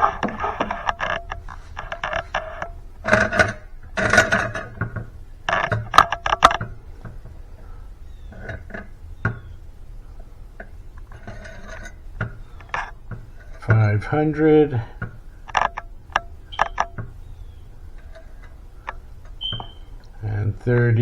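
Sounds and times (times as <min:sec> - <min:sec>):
utensil scraping and clinking bowl: 0:10.6 - 0:13.8.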